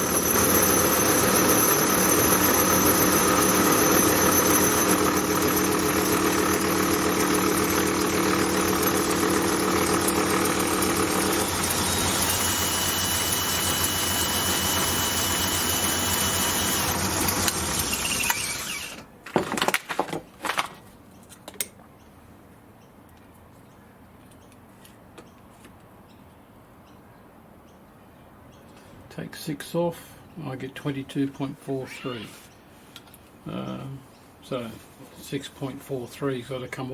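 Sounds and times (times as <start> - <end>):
metalworking machine tool running: 0.0 - 19.1.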